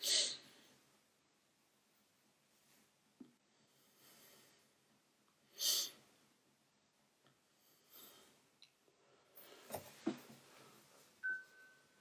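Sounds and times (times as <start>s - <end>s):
person breathing softly: 3.5s - 4.8s, 7.5s - 11.2s.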